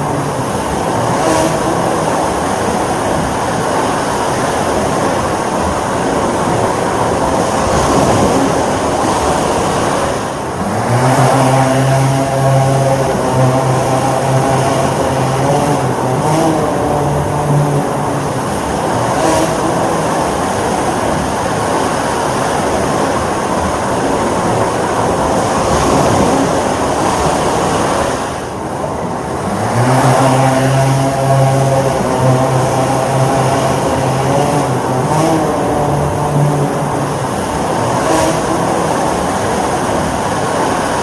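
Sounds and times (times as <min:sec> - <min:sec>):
drone propellers buzzing: 0:00.0 - 0:41.0
rough rushing noise: 0:00.0 - 0:41.0.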